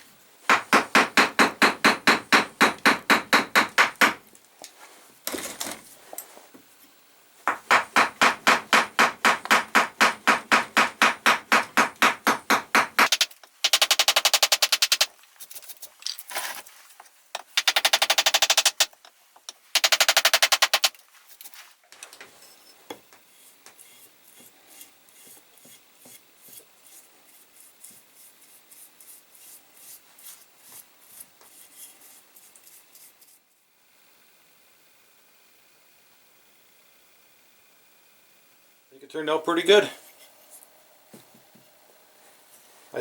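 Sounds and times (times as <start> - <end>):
bursts of rapid strikes: 9.6 - 15.1, 17.5 - 18.9, 19.8 - 20.9.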